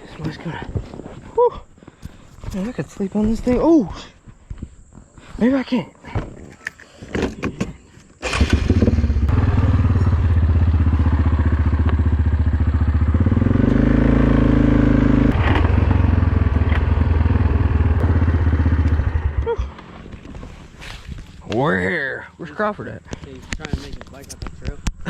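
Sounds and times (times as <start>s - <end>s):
quad engine running: 8.2s - 20.2s.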